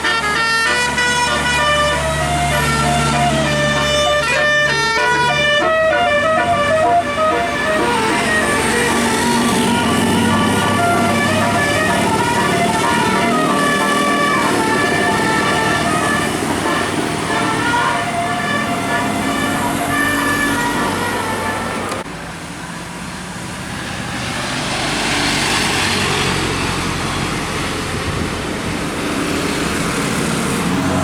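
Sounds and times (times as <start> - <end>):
bus musical horn playing tune: 0.0 - 22.0
bus passing by: 0.0 - 31.0.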